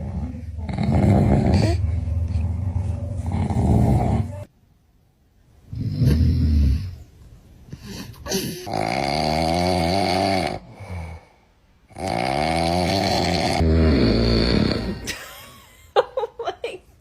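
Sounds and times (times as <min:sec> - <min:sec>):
loud rattling snoring: 0:00.0 - 0:01.8, 0:08.6 - 0:11.1, 0:11.9 - 0:15.1.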